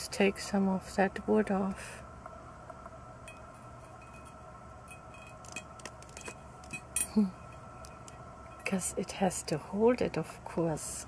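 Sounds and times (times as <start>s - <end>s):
clicks and clinks on ceramic: 3.3s - 8.7s.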